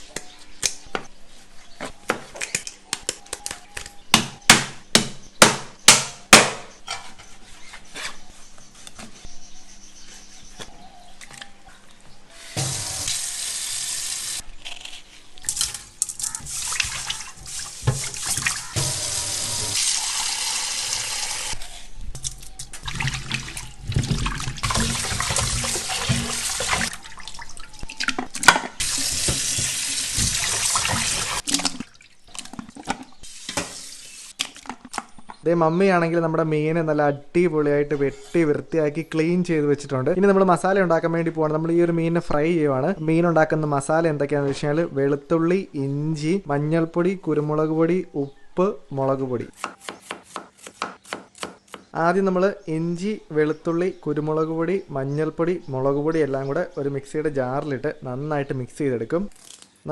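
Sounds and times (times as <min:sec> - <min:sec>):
tap water running and splashing: 0:12.6 - 0:14.4, 0:15.6 - 0:21.6, 0:22.8 - 0:27.4, 0:28.8 - 0:34.3.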